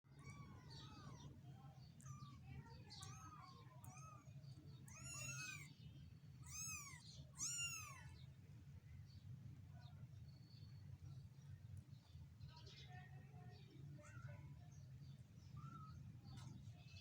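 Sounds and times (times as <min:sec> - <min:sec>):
kittens mewing: 0:00.1 - 0:01.4, 0:02.0 - 0:05.7, 0:06.4 - 0:08.2.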